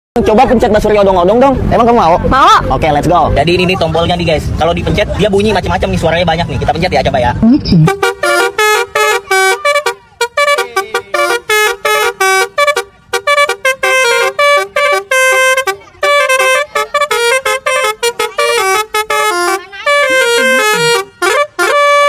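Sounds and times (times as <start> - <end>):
musical horn playing a tune: 7.8 - 22.0.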